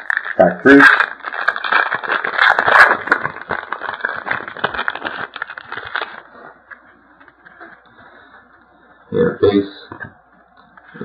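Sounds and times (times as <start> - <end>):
wrapper torn and crinkled: 0.0 - 7.8.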